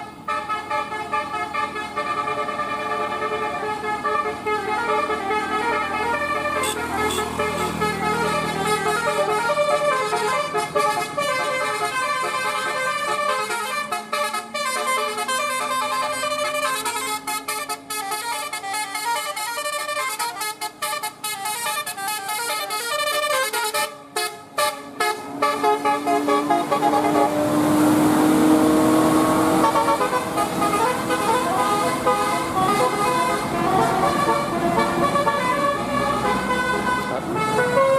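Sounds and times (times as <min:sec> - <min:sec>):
multi-tone air horn melody: 0:00.0 - 0:37.9.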